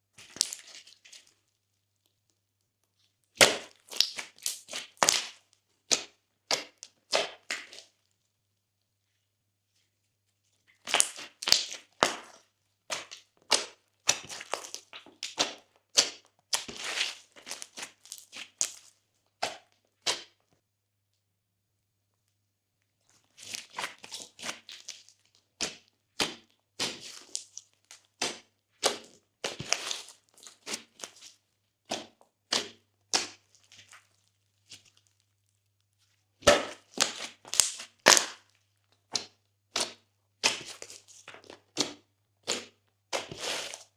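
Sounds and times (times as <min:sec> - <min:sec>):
slime squishing with wet clicks: 0:00.2 - 0:01.4, 0:03.3 - 0:07.8, 0:36.4 - 0:43.8.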